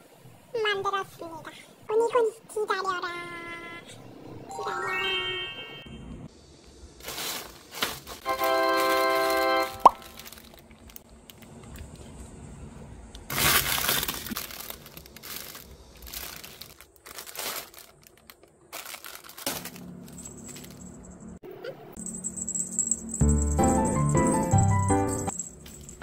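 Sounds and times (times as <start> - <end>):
crinkling and rustling: 7.0 - 21.2
held musical chord: 23.1 - 25.3.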